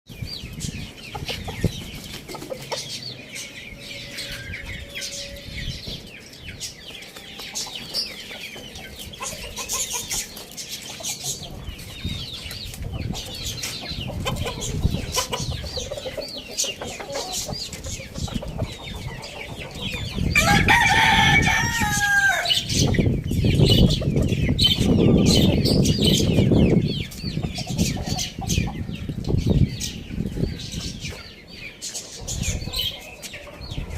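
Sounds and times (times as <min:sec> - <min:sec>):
chickens clucking: 0:00.1 - 0:33.9
rooster crowing: 0:20.4 - 0:22.7.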